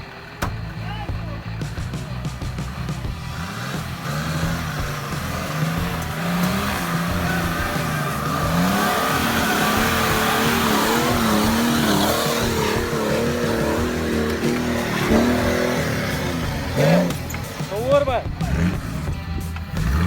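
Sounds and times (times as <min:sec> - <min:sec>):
engine revving under load: 0:00.0 - 0:20.0.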